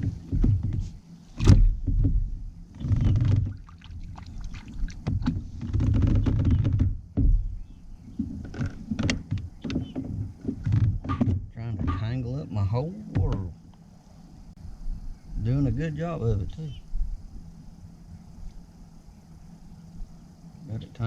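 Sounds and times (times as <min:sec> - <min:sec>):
knocks against kayak hull: 0:00.0 - 0:02.3, 0:04.5 - 0:07.5, 0:08.1 - 0:12.2, 0:13.1 - 0:13.5.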